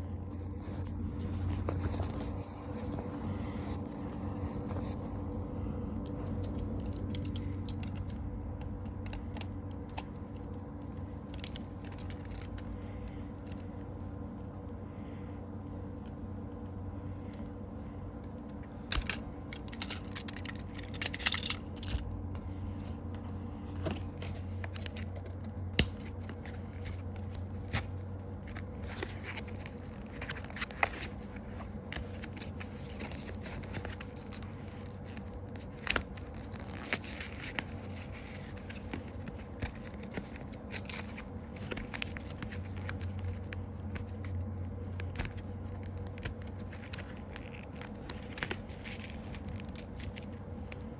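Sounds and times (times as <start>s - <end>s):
steady low hum: 0.0s - 50.9s
packaging tearing and crinkling: 24.0s - 50.4s.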